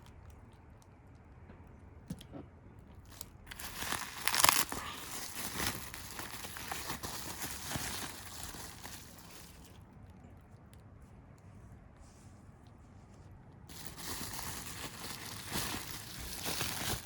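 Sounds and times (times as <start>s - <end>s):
packaging crinkling: 3.0s - 9.9s, 13.7s - 17.0s.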